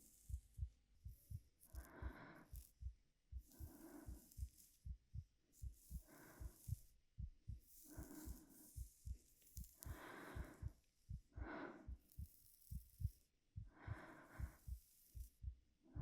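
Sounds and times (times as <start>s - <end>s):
heartbeat thumps: 0.0s - 16.0s
woman breathing gently: 1.1s - 4.8s, 5.8s - 6.9s, 7.6s - 8.9s, 9.7s - 13.0s, 13.6s - 16.0s.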